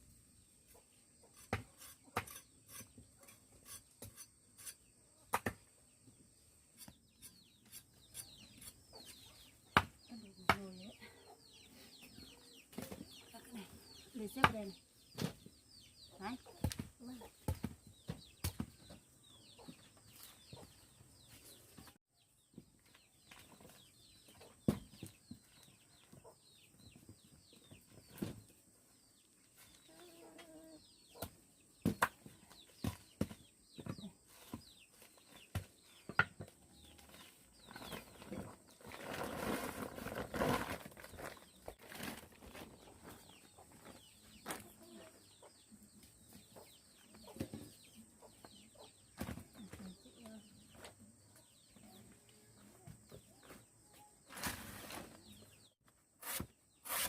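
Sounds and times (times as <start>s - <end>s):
rustling: 37.1s - 43.2s
chickens clucking: 42.7s - 50.7s.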